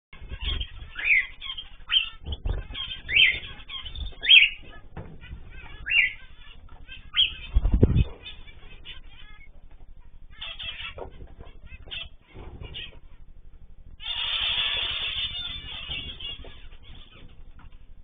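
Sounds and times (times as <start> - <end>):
birds chirping and chattering: 0.2 - 18.0
low thumps: 2.0 - 14.0.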